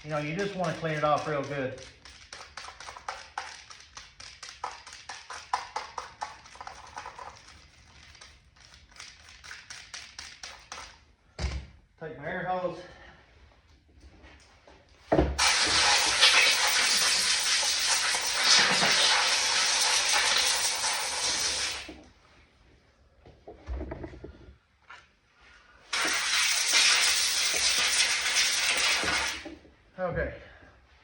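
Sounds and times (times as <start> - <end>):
compressed air hissing: 15.4 - 21.9, 25.9 - 29.5.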